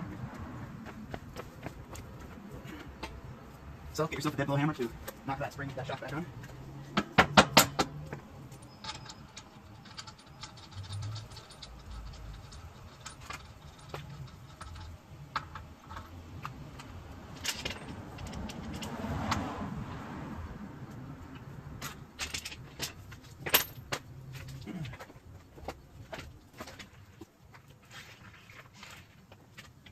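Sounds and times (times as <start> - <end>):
metallic clatter of tools: 7.2 - 19.0, 21.8 - 25.1.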